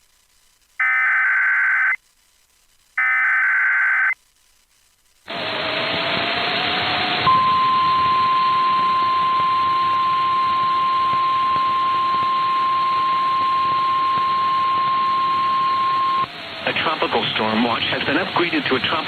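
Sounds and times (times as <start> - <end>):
radio static hiss: 0.0 - 5.3, 11.1 - 19.0
steady alarm tone: 7.2 - 16.4.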